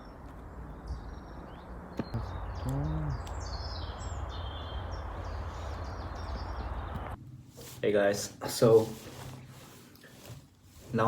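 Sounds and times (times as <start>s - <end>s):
forest birds chirping: 0.0s - 7.2s
outdoor background noise: 0.0s - 11.0s
low voice-like hum: 2.2s - 3.5s.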